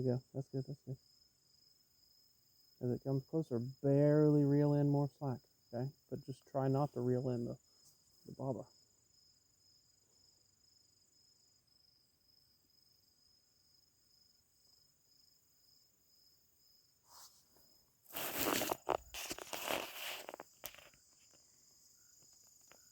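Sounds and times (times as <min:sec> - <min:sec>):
crickets chirping: 0:00.0 - 0:22.9
high insect whine: 0:00.0 - 0:22.9
rustling and scraping on microphone: 0:17.1 - 0:21.4.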